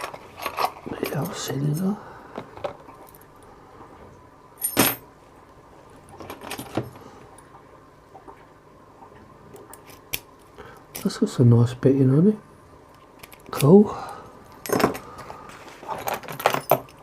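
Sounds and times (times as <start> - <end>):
keys clinking and rattling: 15.8 - 17.0.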